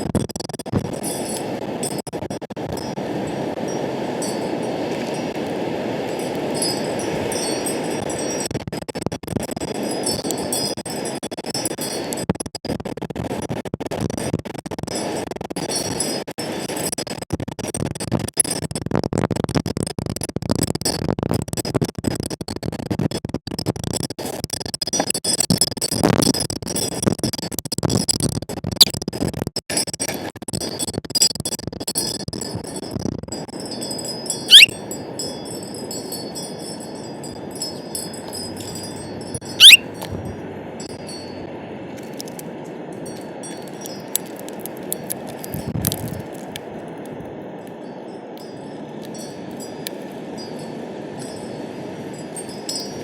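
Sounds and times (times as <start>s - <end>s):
wind gusting over microphone: 0.0s - 22.9s, 31.7s - 53.0s
wind chimes tinkling: 1.0s - 2.0s, 2.7s - 8.5s, 9.7s - 12.2s, 32.4s - 53.0s
downward sweeping chirp: 34.4s - 34.8s, 39.5s - 39.9s.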